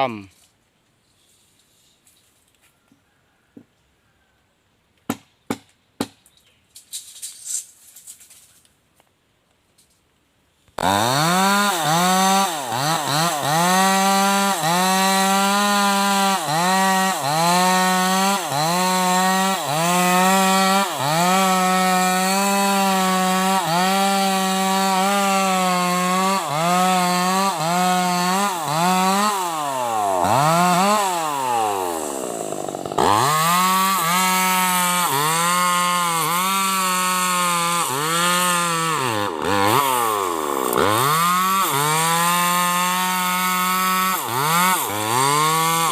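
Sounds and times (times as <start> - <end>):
chainsaw cutting wood: 10.7 - 45.9.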